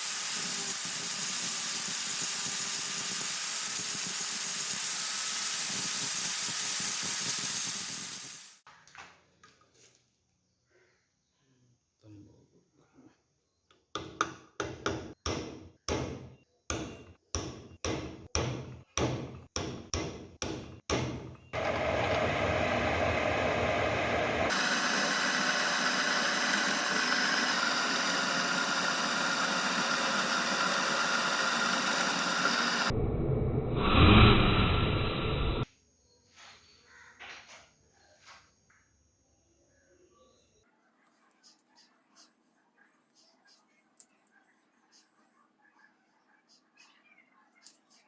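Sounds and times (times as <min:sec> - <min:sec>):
harsh machine noise: 0:21.6 - 0:33.0.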